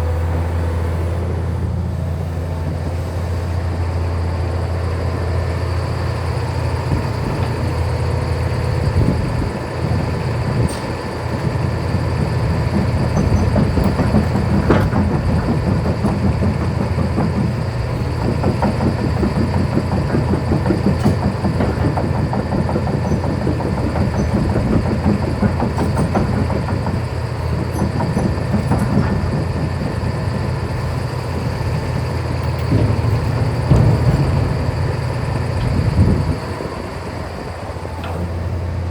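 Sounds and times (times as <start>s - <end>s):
excavator diesel engine droning: 0.0s - 38.9s
rattling: 8.8s - 37.1s.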